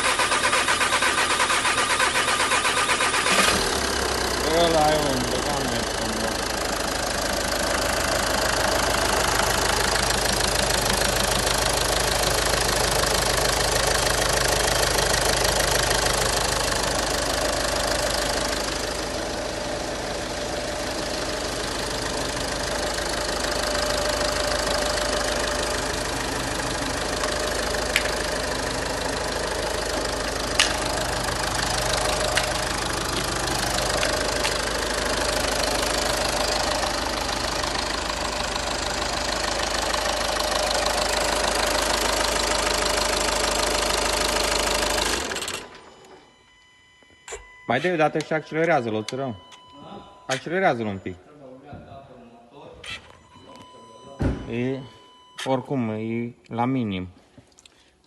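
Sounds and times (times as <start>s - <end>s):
diesel engine idling: 0.0s - 46.4s.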